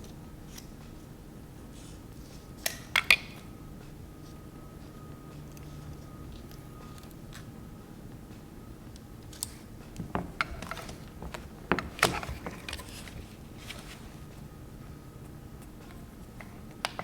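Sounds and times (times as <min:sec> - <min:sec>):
packaging clicks and rustles: 0:09.2 - 0:14.4.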